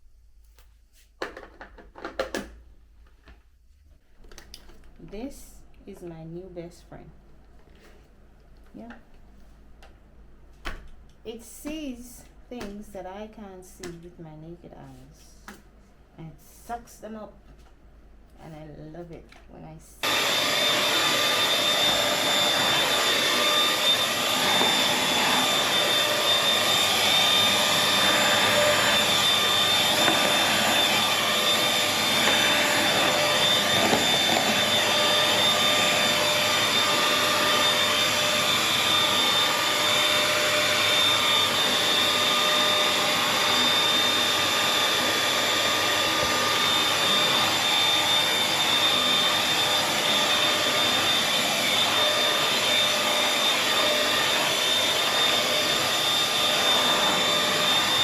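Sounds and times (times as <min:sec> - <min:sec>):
vacuum cleaner running: 0:20.0 - 0:58.0.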